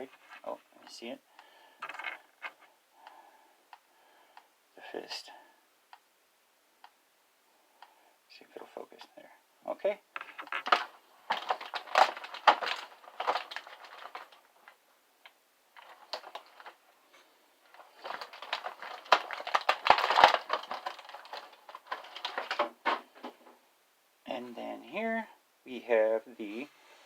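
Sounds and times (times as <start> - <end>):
plastic packaging crinkling: 10.2 - 14.8, 15.7 - 16.9, 17.6 - 23.4.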